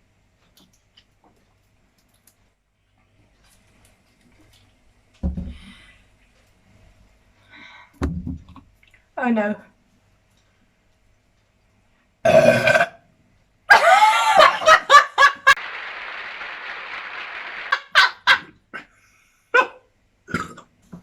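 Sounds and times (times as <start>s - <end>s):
people burping: 12.3s - 13.0s, 20.3s - 20.7s.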